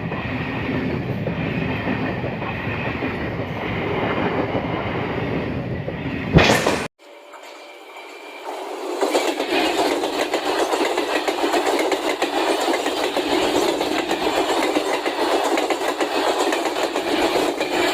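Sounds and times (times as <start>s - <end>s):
train passing at speed: 0.0s - 17.9s.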